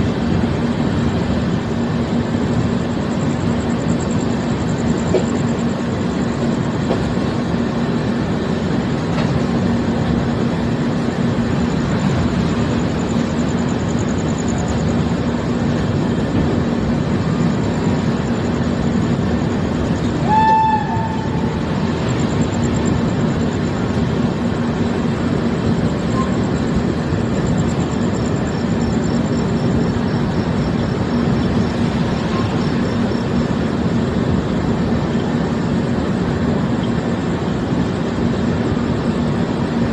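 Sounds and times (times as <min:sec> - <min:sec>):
passenger train rumbling: 0:00.0 - 0:39.9
train horn blast: 0:20.2 - 0:21.8.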